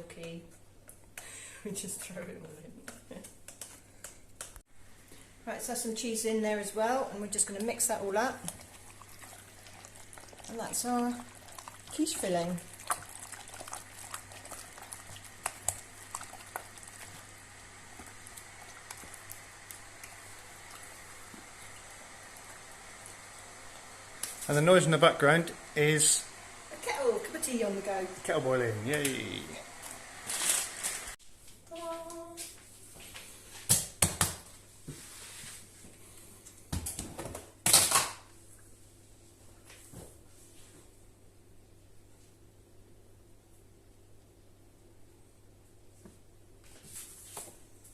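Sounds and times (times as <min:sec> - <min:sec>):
kettle heating rushing noise: 0:04.9 - 0:31.2.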